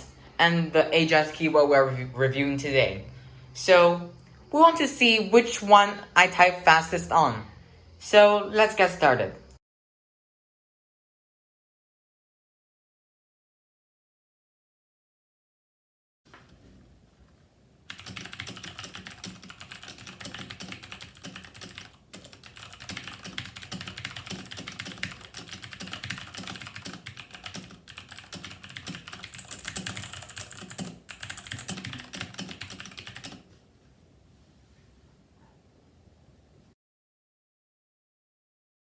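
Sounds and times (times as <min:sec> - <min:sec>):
fast keyboard typing: 0:17.9 - 0:33.5.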